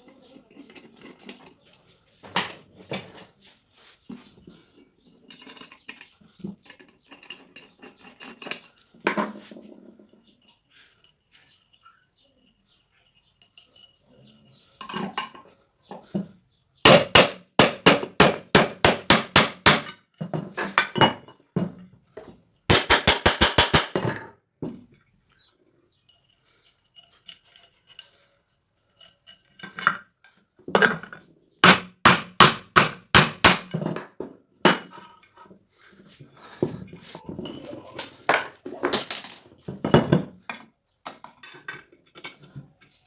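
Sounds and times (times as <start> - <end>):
metal clinking and tapping: 4.1 - 16.3, 19.8 - 31.8, 36.6 - 43.0.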